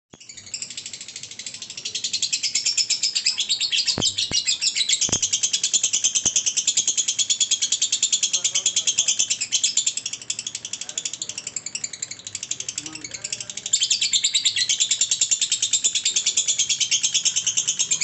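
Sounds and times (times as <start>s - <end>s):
lovebird chattering chirps: 0.2s - 18.0s.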